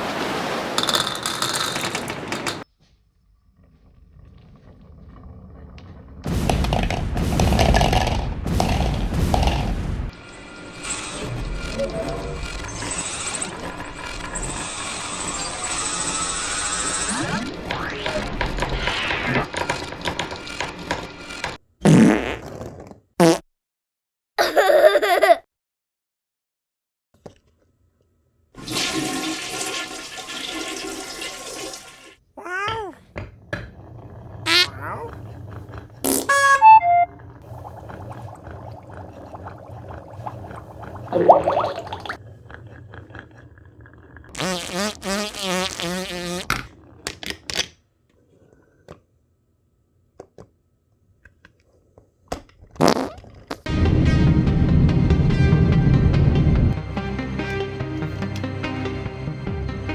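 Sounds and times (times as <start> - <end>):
marbles clicking on wooden track: 0.8 - 2.7
toilet flushing: 28.6 - 32.2, 37.0 - 44.4
cartoon pitch slide: 34.5 - 35.1, 36.1 - 37.1, 44.4 - 46.5.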